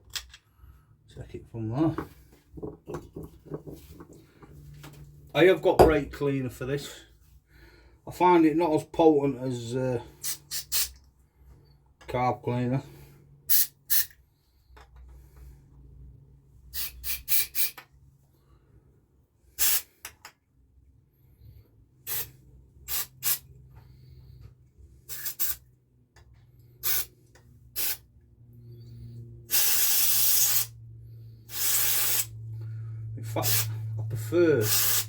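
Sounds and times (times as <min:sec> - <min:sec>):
aerosol spray hissing: 0:19.6 - 0:19.9, 0:22.1 - 0:22.3, 0:25.1 - 0:25.6, 0:27.8 - 0:28.0, 0:29.5 - 0:30.7, 0:31.5 - 0:32.3, 0:33.4 - 0:33.7, 0:34.6 - 0:35.0.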